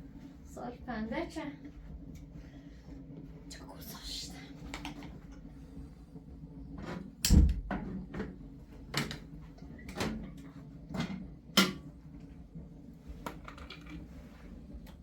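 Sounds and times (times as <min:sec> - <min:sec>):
objects knocking and clattering: 0:13.2 - 0:14.1.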